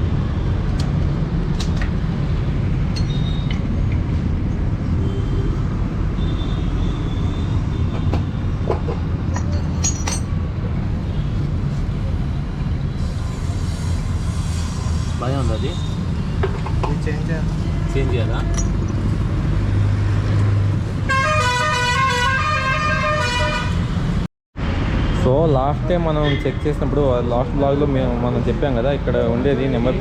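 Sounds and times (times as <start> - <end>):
metal tools clinking: 9.3 - 10.4.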